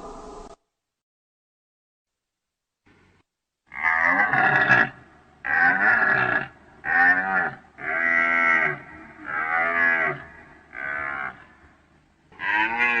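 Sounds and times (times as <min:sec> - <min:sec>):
deer calling: 0:03.7 - 0:11.7.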